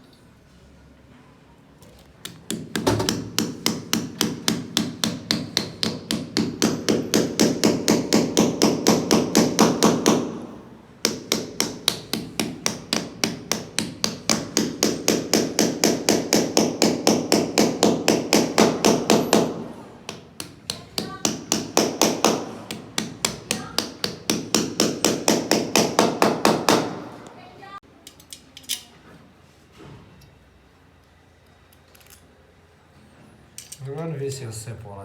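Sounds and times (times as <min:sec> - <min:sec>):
hand hammering: 0:02.2 - 0:27.4.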